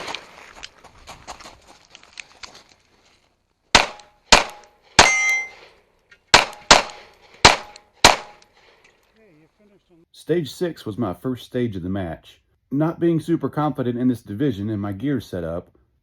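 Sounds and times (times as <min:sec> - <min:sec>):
pistol shots: 0:03.7 - 0:05.5, 0:06.3 - 0:08.4
bullet ringing steel target: 0:03.8 - 0:05.6.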